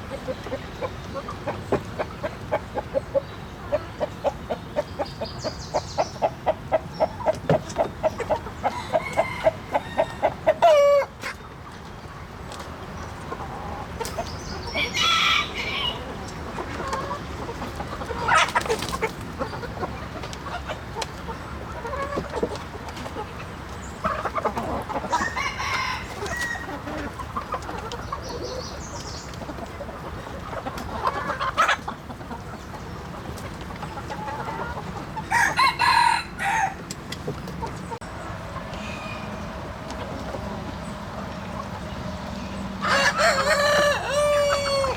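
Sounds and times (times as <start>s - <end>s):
chickens clucking: 0.0s - 44.9s
rooster crowing: 14.8s - 16.0s, 25.1s - 26.8s, 35.3s - 36.8s, 42.8s - 44.9s.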